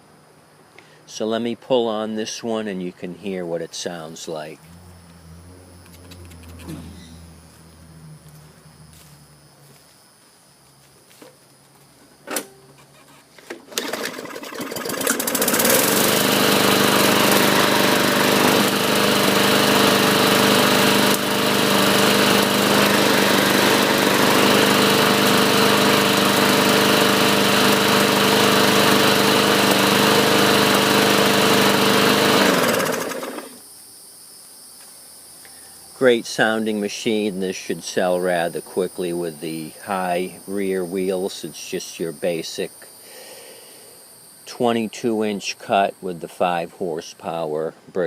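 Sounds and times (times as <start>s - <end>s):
lawn mower engine running: 4.2s - 9.8s, 12.3s - 33.6s.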